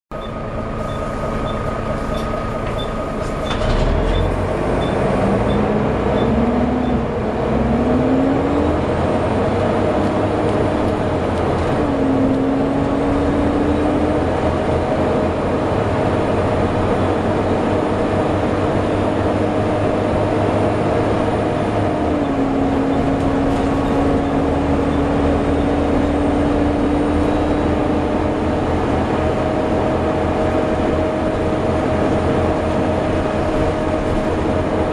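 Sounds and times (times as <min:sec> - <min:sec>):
short high beeps: 0:00.1 - 0:05.6
bus engine whine: 0:00.1 - 0:34.9.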